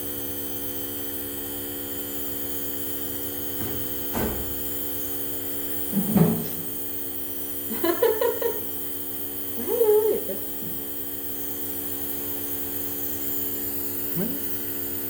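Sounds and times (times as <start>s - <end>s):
nebulizer compressor humming: 0.0s - 15.0s.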